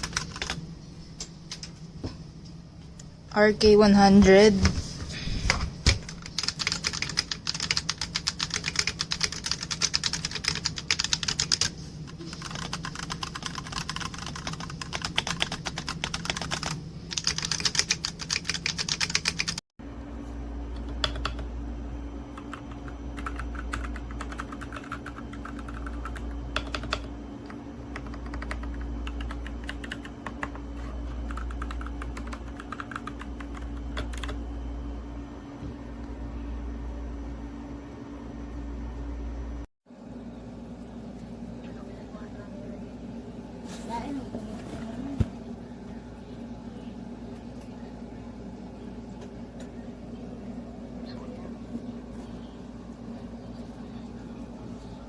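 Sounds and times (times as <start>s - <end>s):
typing on mechanical keyboard: 0.0s - 0.6s, 5.9s - 19.6s, 21.0s - 21.4s, 22.4s - 27.1s, 27.9s - 30.6s, 31.3s - 34.4s
steady low hum: 0.0s - 55.0s.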